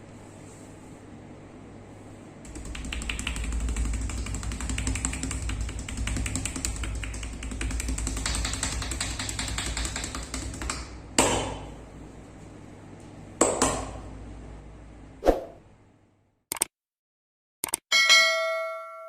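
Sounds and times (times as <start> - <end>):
sharp ringing hit: 17.9 - 19.0.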